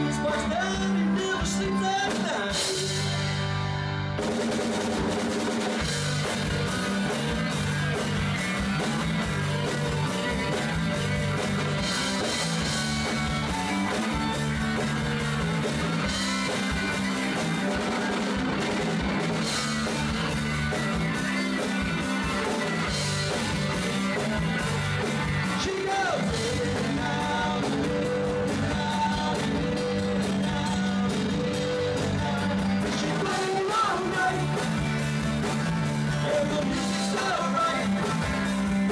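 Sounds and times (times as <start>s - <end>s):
person singing: 0.0s - 3.4s, 24.4s - 34.8s, 36.0s - 38.6s
drum kit: 0.0s - 38.9s
electric guitar: 0.0s - 38.9s.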